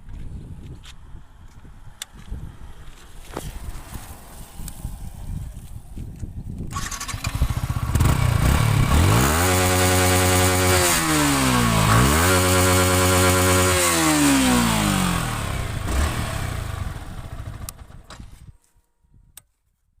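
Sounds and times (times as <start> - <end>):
motorcycle engine revving: 6.6 - 18.1.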